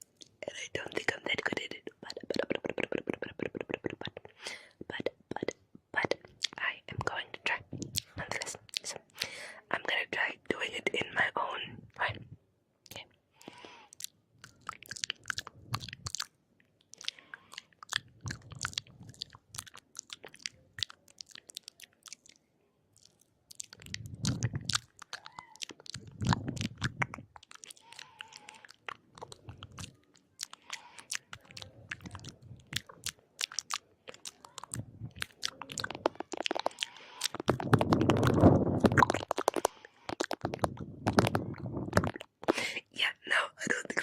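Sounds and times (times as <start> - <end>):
crisp chewing crunches: 7.7 - 9.3, 12.9 - 42.7
heavy breathing on microphone: 9.2 - 9.7.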